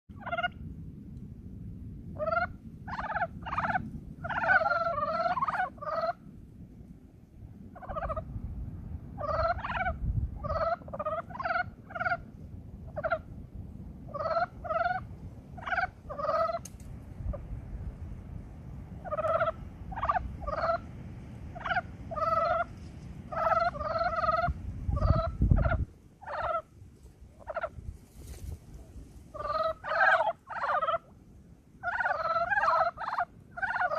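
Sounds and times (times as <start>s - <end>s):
steady low rumble: 0.1s - 33.9s
frogs croaking: 2.2s - 6.2s, 7.7s - 8.3s, 9.2s - 13.3s, 14.1s - 16.6s, 19.0s - 20.9s, 21.5s - 26.8s, 27.4s - 27.8s, 29.3s - 31.2s, 31.8s - 33.9s.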